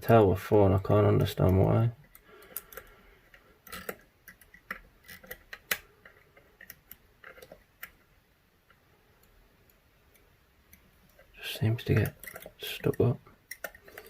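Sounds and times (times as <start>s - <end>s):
lock pick metallic clicks: 11.9s - 14.0s.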